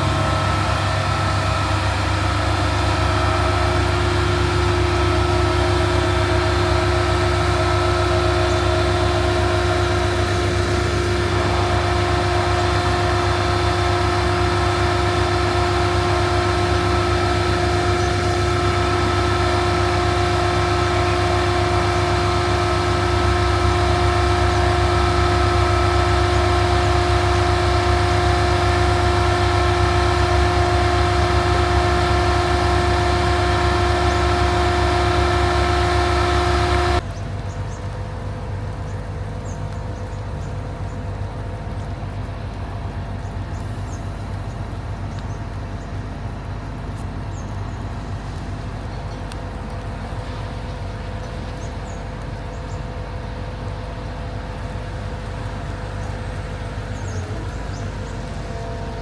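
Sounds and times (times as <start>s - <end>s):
vehicle engine idling: 0.0s - 59.0s.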